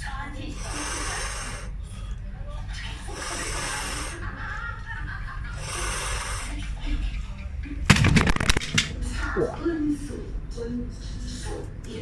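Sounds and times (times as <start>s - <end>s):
heavy breathing: 0.0s - 7.9s
boards cracking and clattering: 7.9s - 8.9s.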